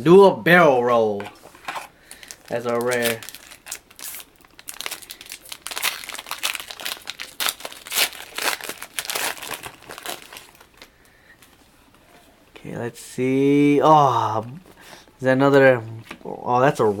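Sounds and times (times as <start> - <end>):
card pack crinkling: 2.0 - 10.9.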